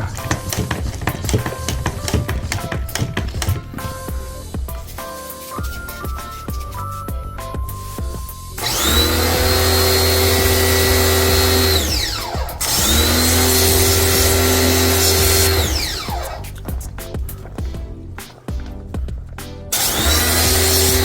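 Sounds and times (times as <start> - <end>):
faint background music: 0.0 - 21.0
power tool motor whine: 8.6 - 16.5, 19.7 - 21.0.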